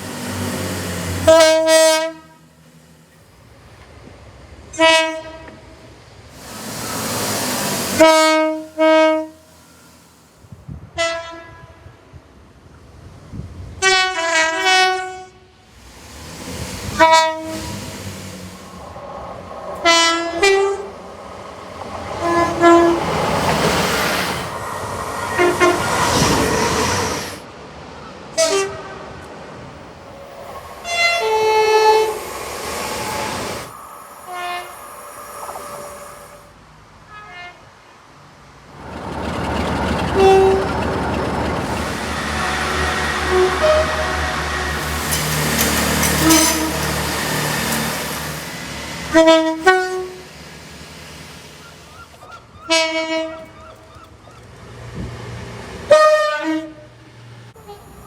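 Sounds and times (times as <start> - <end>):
passing trains rolling: 0.0 - 58.0
train horn blasts: 1.2 - 2.7, 4.7 - 5.9, 7.9 - 9.5, 10.9 - 12.0, 13.8 - 15.7, 17.0 - 17.8, 19.8 - 21.0, 22.1 - 23.6, 25.3 - 26.8, 28.4 - 29.3, 30.8 - 32.4, 34.2 - 34.8, 37.0 - 37.9, 39.2 - 47.8, 49.1 - 50.3, 52.6 - 53.8, 55.9 - 58.0.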